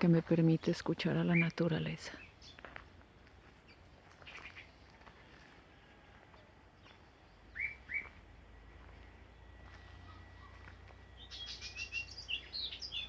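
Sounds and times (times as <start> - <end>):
songbirds chirping: 0.0 - 13.0.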